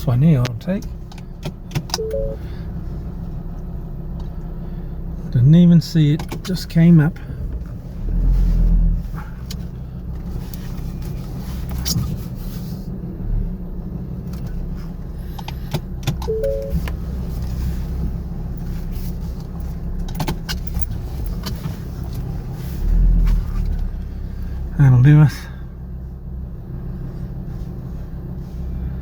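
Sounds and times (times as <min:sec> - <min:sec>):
car engine low rumble: 0:00.0 - 0:29.0
two-note beep: 0:02.0 - 0:02.4, 0:16.3 - 0:16.8.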